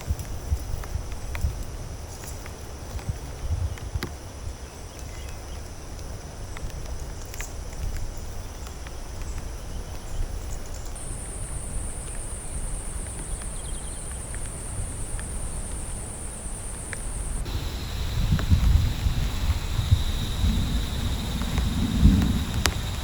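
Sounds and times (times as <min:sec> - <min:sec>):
insects buzzing: 0:02.2 - 0:23.0
faint drips or ticks: 0:16.9 - 0:23.0
low rumble: 0:17.5 - 0:23.0.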